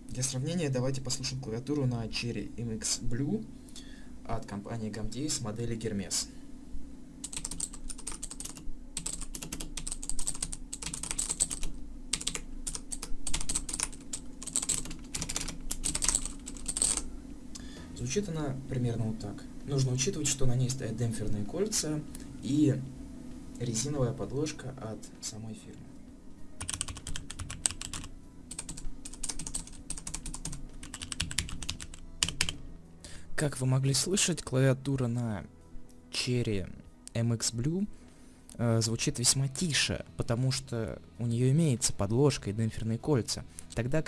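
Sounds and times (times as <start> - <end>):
mechanical keyboard typing: 7.2 - 17.1, 26.6 - 32.6.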